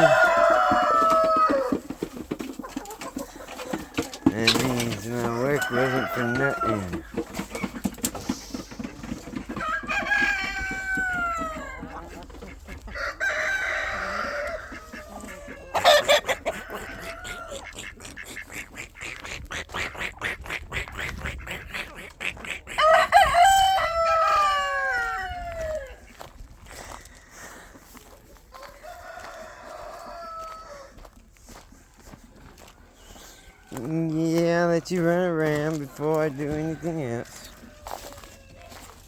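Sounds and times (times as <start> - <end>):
rooster crowing: 0.0 - 1.8, 5.3 - 7.0, 9.6 - 11.8, 13.0 - 17.7, 22.8 - 26.0, 28.5 - 31.1, 36.2 - 39.0
chickens clucking: 0.0 - 39.0.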